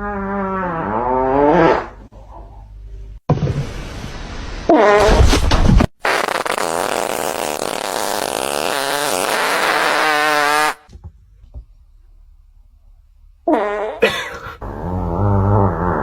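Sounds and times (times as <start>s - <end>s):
long loud fart: 0.0s - 2.0s, 5.9s - 10.9s, 13.5s - 16.0s.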